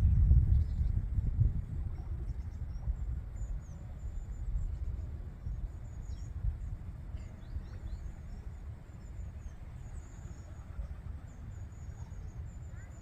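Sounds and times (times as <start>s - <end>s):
steady low rumble: 0.0s - 6.8s.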